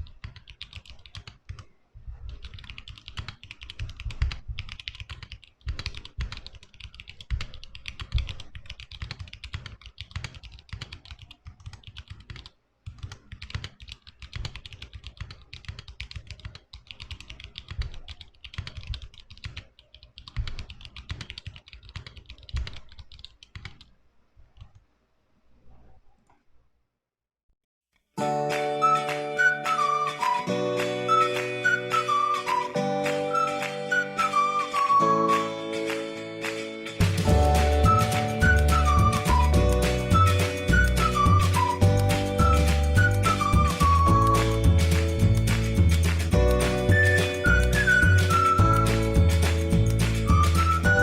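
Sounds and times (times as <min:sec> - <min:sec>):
mechanical keyboard typing: 0:00.0 - 0:23.9.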